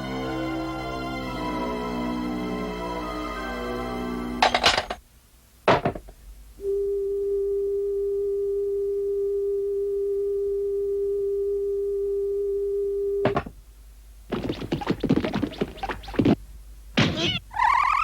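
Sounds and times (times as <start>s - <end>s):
cartoon sound effects: 17.0s - 18.0s.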